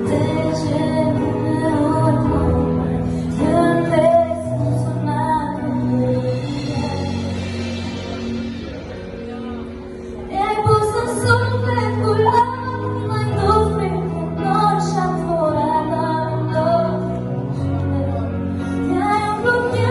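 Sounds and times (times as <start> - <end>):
woman singing a song: 0.0 - 7.5, 10.3 - 19.9
bass and instrumental backing: 0.0 - 19.9.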